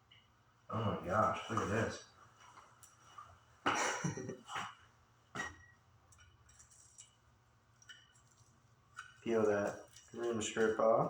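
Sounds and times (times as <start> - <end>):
person coughing: 3.7 - 4.6.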